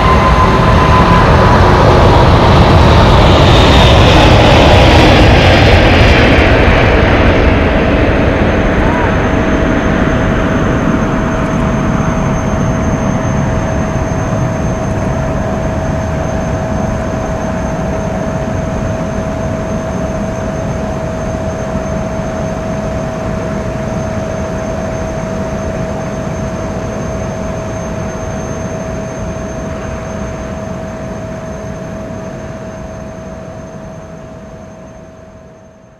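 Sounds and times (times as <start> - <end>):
jet engine whine: 0.0 - 35.9
jet engines rumble and hiss: 0.0 - 35.9.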